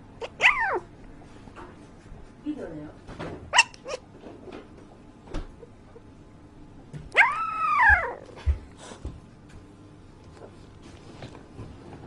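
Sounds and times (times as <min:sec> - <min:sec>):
dog whining: 0:00.2 - 0:00.9, 0:03.5 - 0:04.1, 0:07.1 - 0:08.4.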